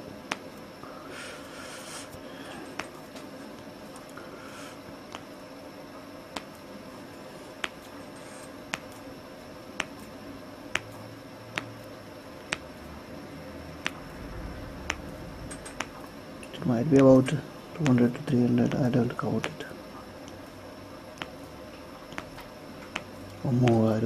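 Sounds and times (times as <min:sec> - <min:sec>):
finger joint cracking pops: 0:15.6 - 0:16.0, 0:22.1 - 0:23.8.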